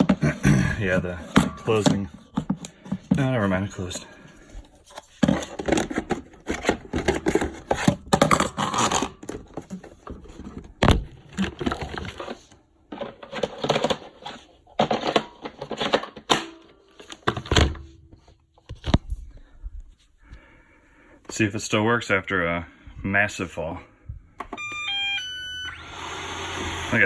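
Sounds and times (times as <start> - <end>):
robot vacuum clattering and scraping: 0.0 - 4.0.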